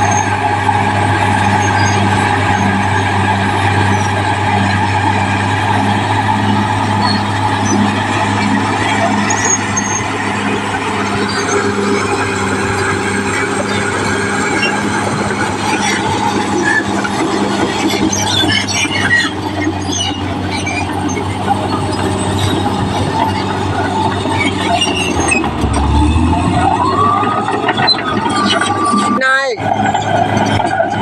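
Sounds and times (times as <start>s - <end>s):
bulldozer diesel engine running: 0.0s - 31.0s
steel tracks squealing: 0.0s - 31.0s
rising tone: 22.2s - 30.0s.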